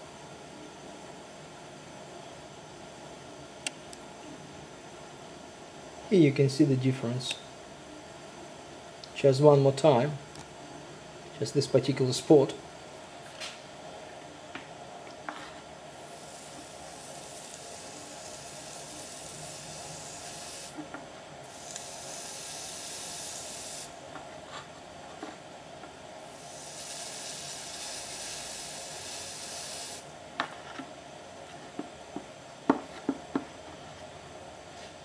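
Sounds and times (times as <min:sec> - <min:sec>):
electropolishing wand hissing: 0:15.9 - 0:20.8, 0:21.4 - 0:24.0, 0:26.2 - 0:30.1.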